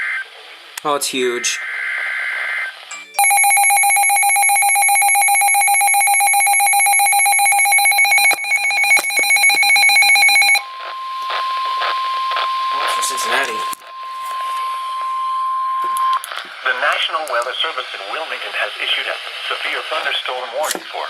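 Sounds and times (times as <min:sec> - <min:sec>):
two-tone attention signal: 0:03.0 - 0:16.2
steady single alarm tone: 0:03.2 - 0:16.2
data burst: 0:03.2 - 0:16.7.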